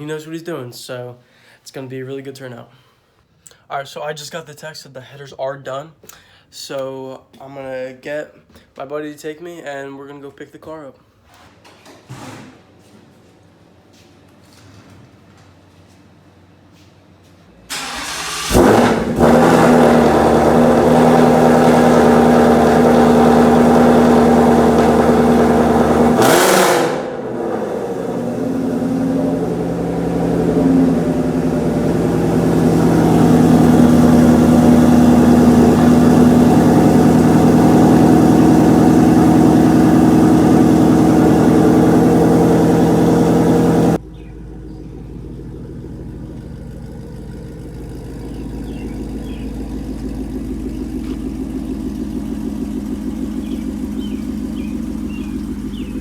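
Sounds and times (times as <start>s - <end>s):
car engine starting and running: 17.6s - 56.0s.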